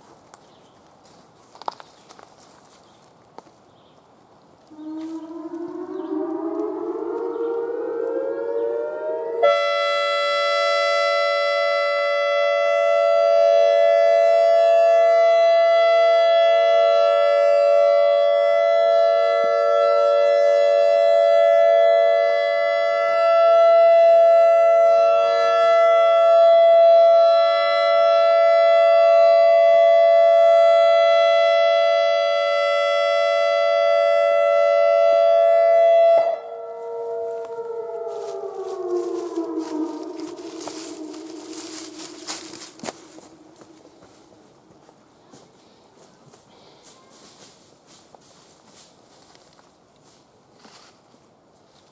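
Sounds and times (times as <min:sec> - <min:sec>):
electronic warning siren: 0:04.7 - 0:44.6.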